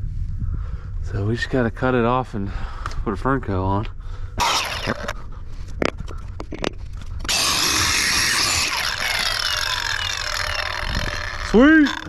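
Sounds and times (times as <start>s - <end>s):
power tool cutting pipe: 7.3s - 12.0s.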